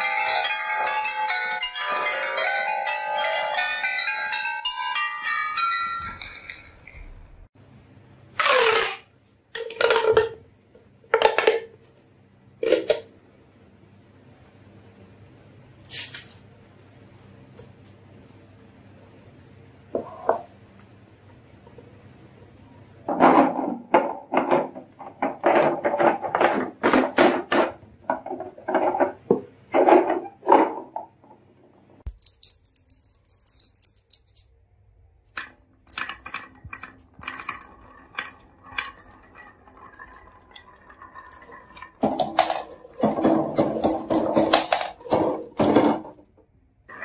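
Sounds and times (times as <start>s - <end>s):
marbles clattering down wooden track: 35.4s - 46.1s.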